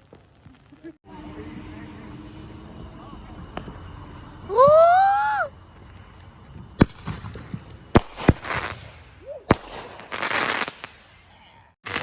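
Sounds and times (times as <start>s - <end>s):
crackling hiss: 0.0s - 1.0s
sharp bangs: 6.6s - 11.2s.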